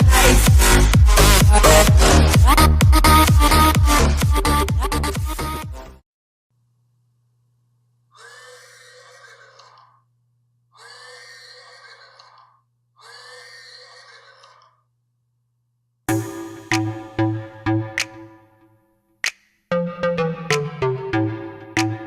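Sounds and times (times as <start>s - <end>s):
electronic music: 0.0s - 6.0s, 16.1s - 18.7s, 19.7s - 22.0s
horse neighing: 8.2s - 9.9s, 10.8s - 14.8s.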